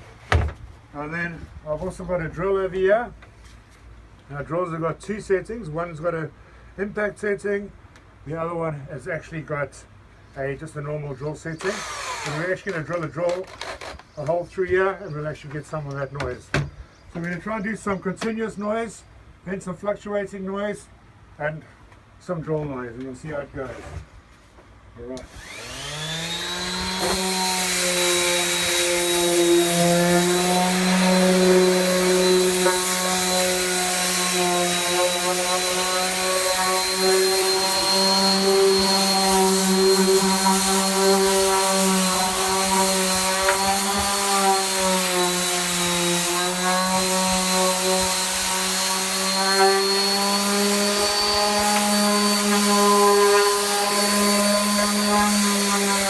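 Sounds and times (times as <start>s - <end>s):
electric sander whining: 11.6s - 12.5s, 25.2s - 56.0s
rough sanding rasp: 25.4s - 56.0s.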